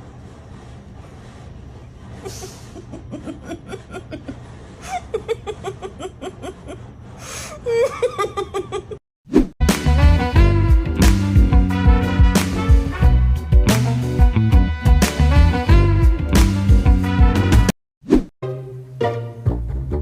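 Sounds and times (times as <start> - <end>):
person laughing: 2.2 - 9.0.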